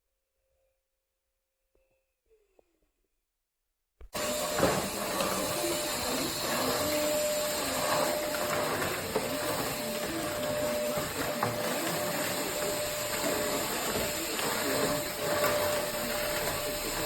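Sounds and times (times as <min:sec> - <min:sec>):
stick vacuum running: 0:04.1 - 0:17.0.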